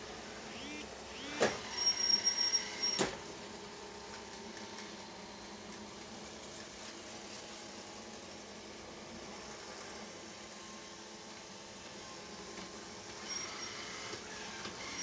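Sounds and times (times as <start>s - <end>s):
robot vacuum wheel whistle: 0.6s - 3.0s.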